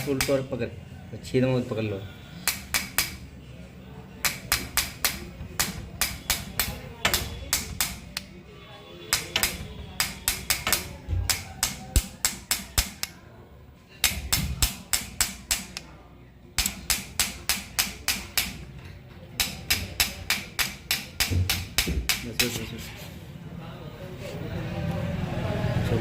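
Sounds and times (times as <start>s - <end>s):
rapid hammering: 0.0s - 0.5s, 2.4s - 3.2s, 4.2s - 8.3s, 9.1s - 13.2s, 14.0s - 15.8s, 16.6s - 18.8s, 19.4s - 22.6s.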